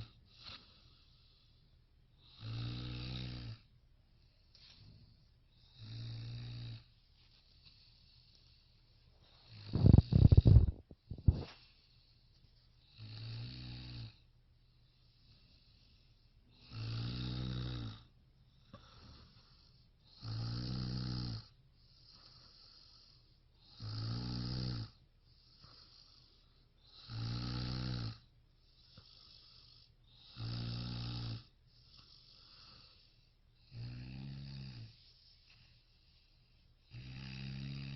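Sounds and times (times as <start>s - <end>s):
faint breathing: 0.0s - 2.5s, 6.8s - 13.1s, 18.0s - 20.3s, 21.7s - 23.8s, 25.2s - 27.1s, 28.5s - 30.4s, 31.4s - 34.0s, 34.8s - 36.9s
person snoring: 2.2s - 3.7s, 5.6s - 6.9s, 9.4s - 11.5s, 16.5s - 18.1s, 18.7s - 28.3s, 28.9s - 35.1s, 36.9s - 37.9s.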